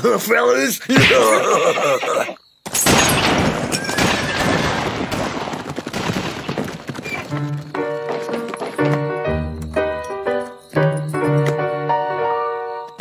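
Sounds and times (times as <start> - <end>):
piano music: 7.3 - 13.0.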